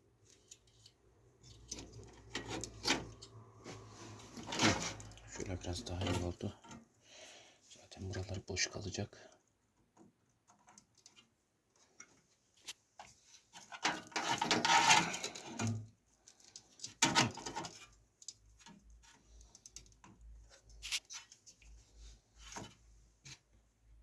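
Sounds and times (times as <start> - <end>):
rustling and scraping: 0.0 - 7.0, 9.9 - 23.9.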